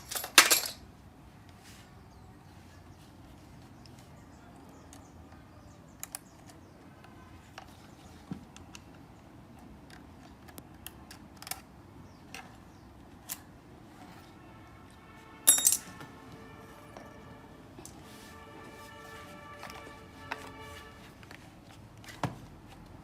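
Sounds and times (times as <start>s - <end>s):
metallic clatter: 0.0s - 0.8s
small metal parts clinking: 0.0s - 0.8s, 15.4s - 16.0s.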